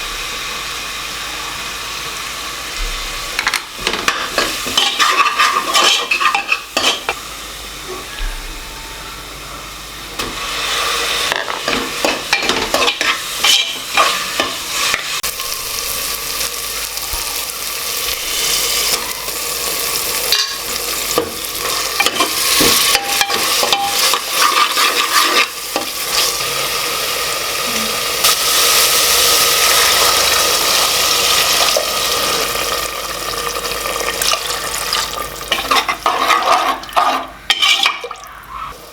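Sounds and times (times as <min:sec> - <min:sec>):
food sizzling in hot oil: 0:00.0 - 0:07.8, 0:09.8 - 0:38.9
spoon scraping pot: 0:03.4 - 0:07.2, 0:21.6 - 0:25.6, 0:35.5 - 0:38.7.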